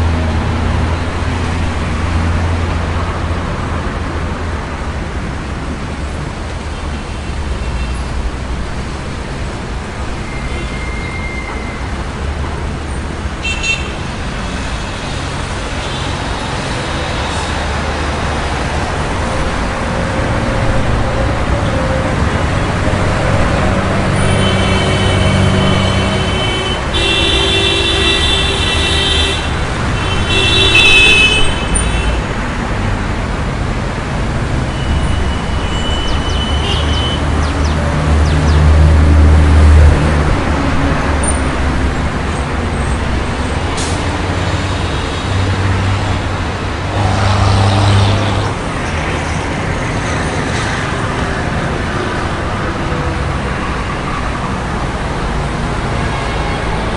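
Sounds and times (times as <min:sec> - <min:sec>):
traffic road noise: 0:00.0 - 0:56.9
heavy vehicle engine rumbling: 0:14.0 - 0:56.9
car horns honking: 0:24.2 - 0:32.2, 0:34.7 - 0:38.4, 0:46.8 - 0:48.6.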